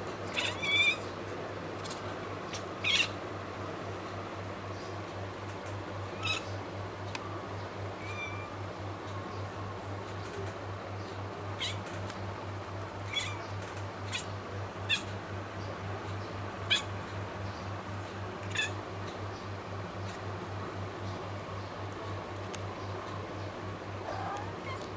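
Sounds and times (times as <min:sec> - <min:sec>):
kitten chirping: 0:00.3 - 0:01.0, 0:02.5 - 0:03.2, 0:08.0 - 0:08.5, 0:13.1 - 0:13.4, 0:14.9 - 0:15.1, 0:16.7 - 0:16.9, 0:24.0 - 0:24.9.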